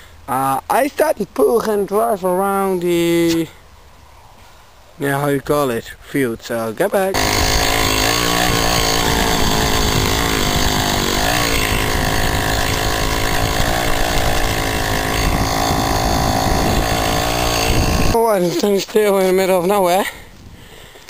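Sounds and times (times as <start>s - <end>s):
moped two-stroke engine running: 7.2s - 18.2s.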